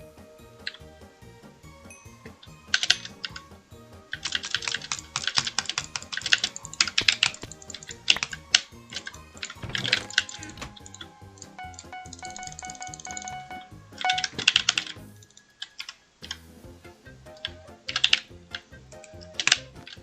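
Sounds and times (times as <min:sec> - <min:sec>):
background music: 0:00.0 - 0:20.0
computer keyboard typing: 0:02.7 - 0:03.4, 0:04.2 - 0:16.0.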